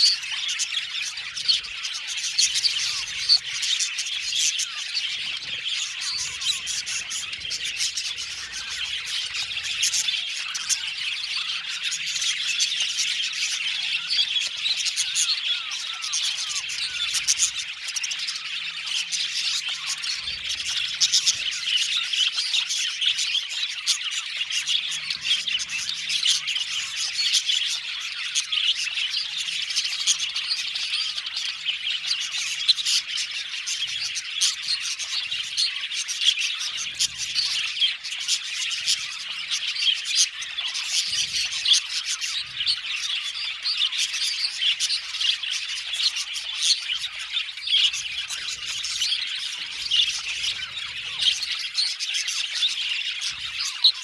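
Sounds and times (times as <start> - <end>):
budgerigars chattering: 0.0 - 54.0.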